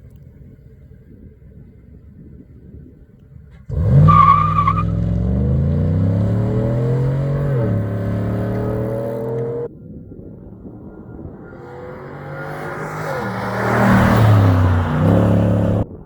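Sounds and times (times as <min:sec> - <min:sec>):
car engine accelerating hard: 0:03.5 - 0:16.0
tyre squeal: 0:03.7 - 0:09.7, 0:11.1 - 0:15.8.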